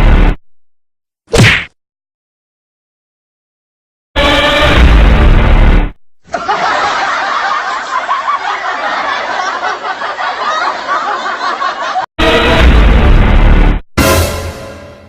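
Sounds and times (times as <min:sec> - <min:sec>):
loud clip with deep bass: 0:00.0 - 0:00.4, 0:04.6 - 0:06.0, 0:12.3 - 0:14.2
crowd laughing: 0:06.3 - 0:12.1.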